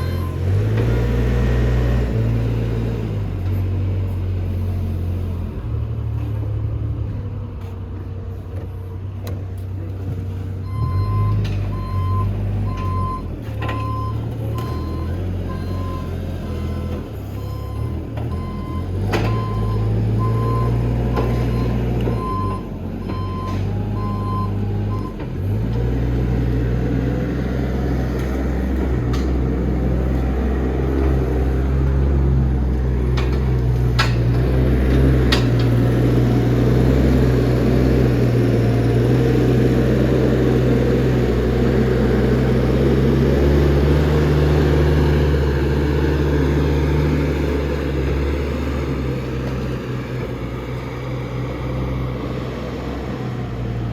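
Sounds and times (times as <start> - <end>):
forklift engine running: 0.0 - 53.9
reversing alarm beeping: 10.7 - 25.2.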